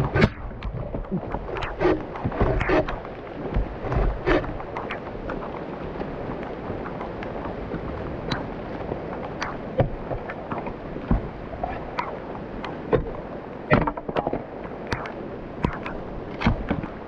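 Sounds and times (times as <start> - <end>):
heavy rain: 0.0 - 17.0
sharp taps and knocks: 9.4 - 11.3, 12.9 - 16.9.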